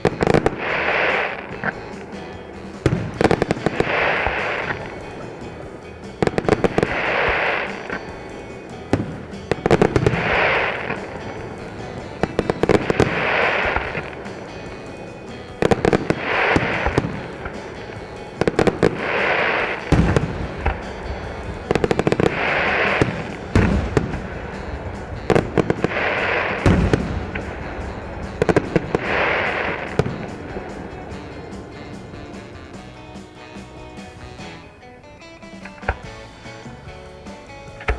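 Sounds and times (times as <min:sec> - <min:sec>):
fireworks bangs: 0:00.0 - 0:37.9
fireworks crackling: 0:00.0 - 0:37.9.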